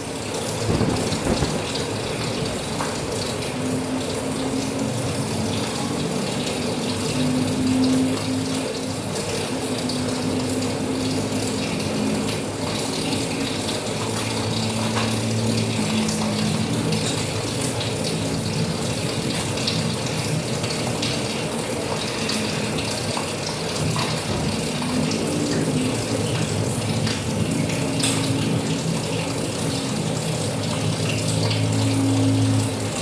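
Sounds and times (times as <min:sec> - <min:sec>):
heavy rain: 0:00.0 - 0:33.0
water running and splashing: 0:00.0 - 0:33.0.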